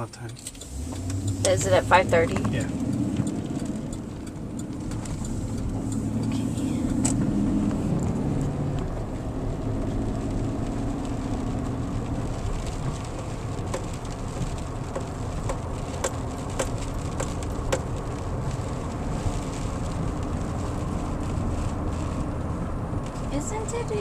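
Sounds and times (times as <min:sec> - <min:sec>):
sharp ticks: 0:00.0 - 0:08.1, 0:12.9 - 0:18.1
car road and engine rumble: 0:00.0 - 0:24.0.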